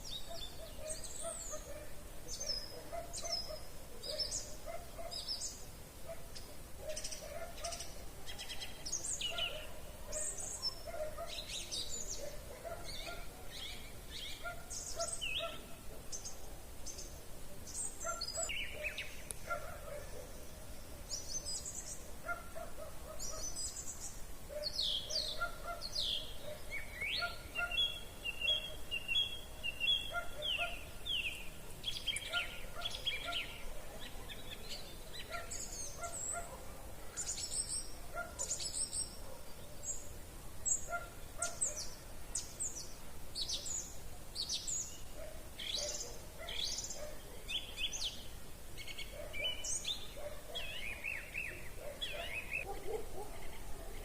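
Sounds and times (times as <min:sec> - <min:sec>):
songbirds singing: 0:00.0 - 0:54.0.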